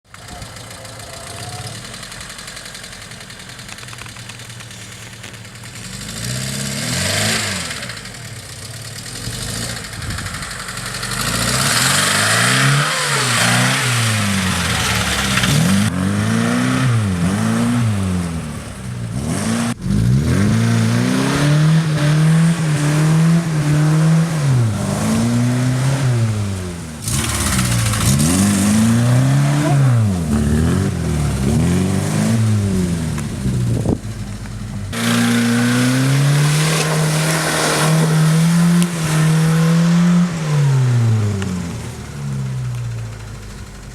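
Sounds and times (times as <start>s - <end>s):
car engine revving hard: 5.8s - 8.4s, 9.0s - 34.1s, 34.9s - 42.8s.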